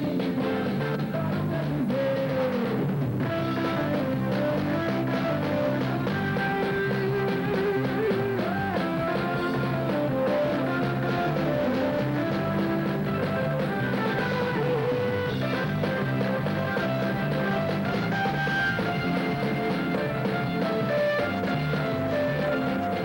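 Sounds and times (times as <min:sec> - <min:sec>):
band playing music: 0:00.0 - 0:23.0.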